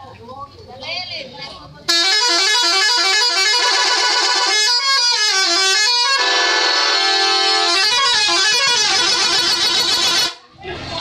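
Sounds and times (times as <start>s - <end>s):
multi-tone bus horn playing tune: 1.9s - 10.5s.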